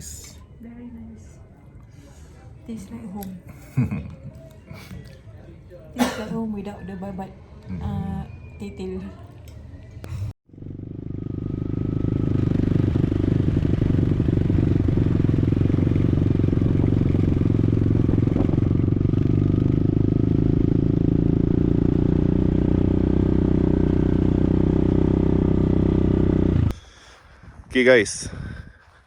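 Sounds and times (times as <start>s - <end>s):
motorcycle engine running: 10.2s - 26.7s.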